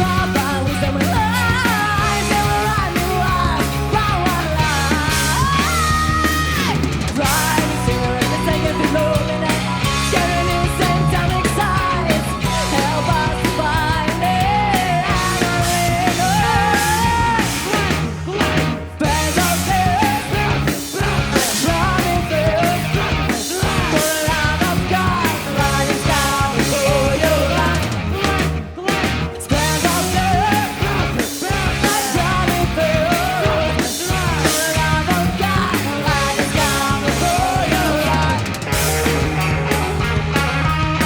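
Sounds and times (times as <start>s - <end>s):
punk rock band playing live: 0.0s - 41.0s.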